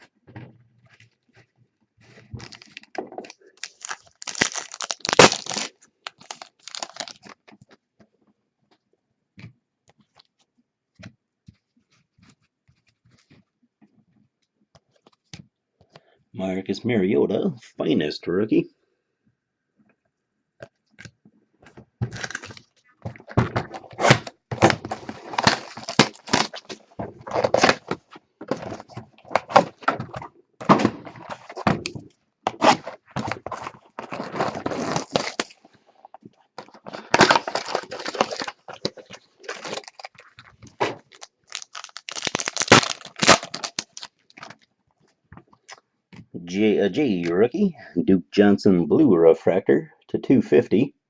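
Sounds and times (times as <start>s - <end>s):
crackling wrapper tearing: 2.4s - 7.4s, 22.2s - 22.7s, 23.7s - 28.0s, 32.6s - 36.0s, 36.6s - 44.7s.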